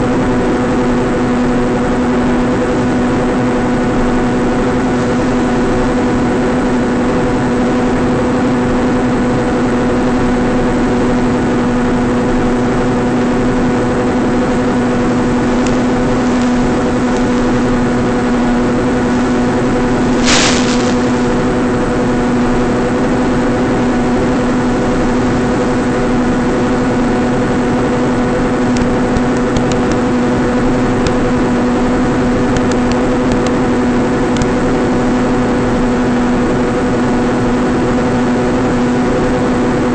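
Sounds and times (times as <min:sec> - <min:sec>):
electric motor and propeller buzzing: 0:00.0 - 0:39.9
faint crackles: 0:20.0 - 0:21.6
burst of hiss: 0:20.1 - 0:21.4.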